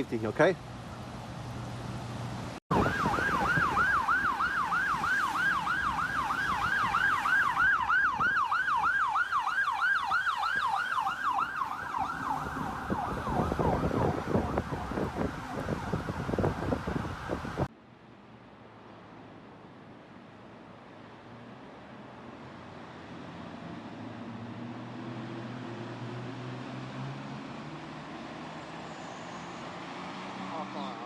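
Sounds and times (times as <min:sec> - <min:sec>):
siren on fast yelp: 0:02.7 - 0:17.6.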